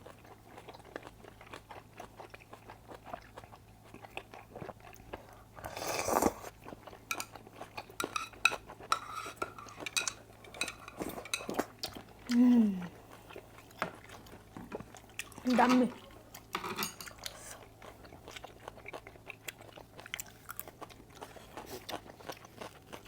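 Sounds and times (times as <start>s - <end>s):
chewing and crunching: 0.0s - 23.0s
utensils clicking against dishes: 8.0s - 11.6s.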